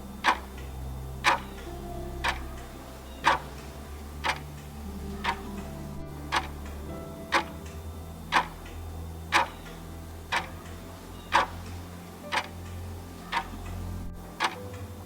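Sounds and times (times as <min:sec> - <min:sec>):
low steady hum: 0:00.0 - 0:15.0
pocket watch ticking: 0:00.2 - 0:00.6, 0:01.2 - 0:01.6, 0:02.2 - 0:02.4, 0:03.2 - 0:03.5, 0:04.2 - 0:04.4, 0:08.3 - 0:08.6, 0:09.3 - 0:09.7, 0:10.3 - 0:10.6, 0:11.3 - 0:11.6, 0:12.3 - 0:12.5, 0:14.4 - 0:14.6.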